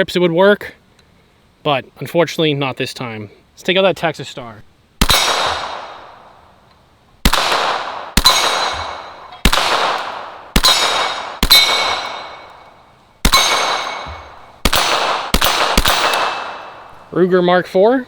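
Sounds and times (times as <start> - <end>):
pistol shots: 5.0 - 6.4, 7.2 - 17.1
steel target clanging: 8.2 - 17.0.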